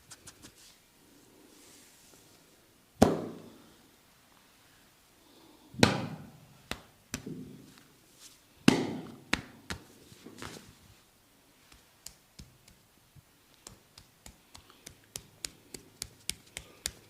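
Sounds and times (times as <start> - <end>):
hands slapping head and shoulders: 5.8 - 7.9, 8.7 - 10.7, 11.6 - 12.9, 13.5 - 17.0
light hand taps: 13.6 - 17.0.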